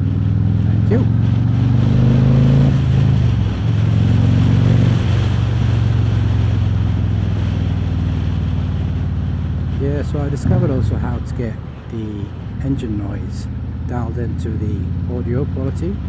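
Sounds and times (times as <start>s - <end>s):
motorcycle engine pulling off: 0.0s - 11.6s
wind rushing over microphone: 0.4s - 15.1s.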